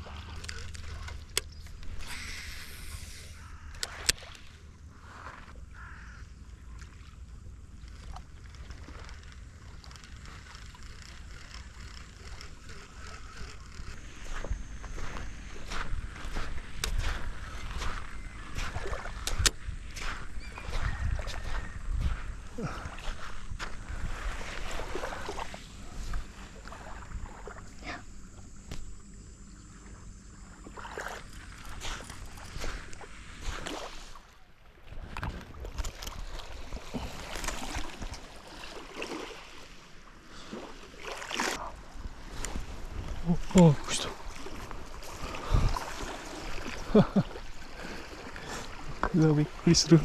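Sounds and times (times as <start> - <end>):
small waves lapping: 0.0 - 50.0
low wind rumble: 0.7 - 30.6, 41.6 - 50.0
small clicks: 7.8 - 14.0.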